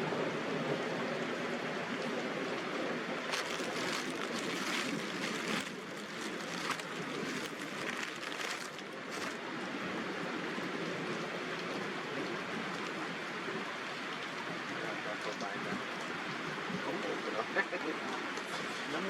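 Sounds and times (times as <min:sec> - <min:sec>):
rain falling: 0:00.0 - 0:19.0.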